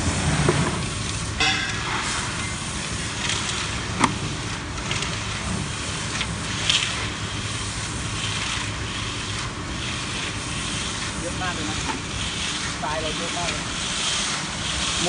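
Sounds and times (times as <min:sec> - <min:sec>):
concrete mixer motor hum: 0:00.0 - 0:15.0
sand tumbling in mixer drum: 0:00.0 - 0:15.0.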